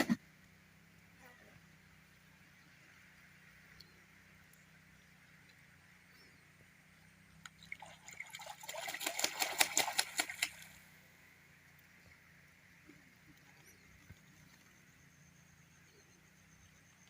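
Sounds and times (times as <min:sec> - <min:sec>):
geese splashing in water: 0:07.4 - 0:11.0.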